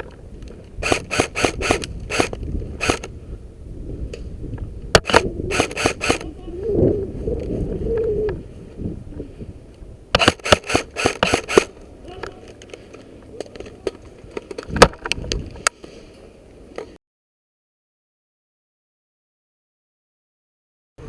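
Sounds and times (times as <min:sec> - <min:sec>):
airsoft guns firing: 0:00.8 - 0:03.1, 0:05.0 - 0:06.2, 0:10.2 - 0:11.7.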